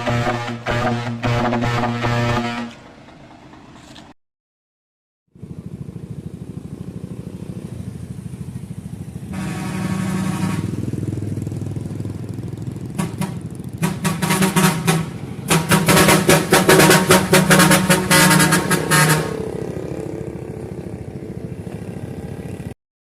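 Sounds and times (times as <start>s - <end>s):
trumpet horn blasts: 0.0s - 2.9s, 9.3s - 10.8s, 13.0s - 19.4s
vehicle engine running: 0.0s - 3.9s, 5.4s - 22.7s.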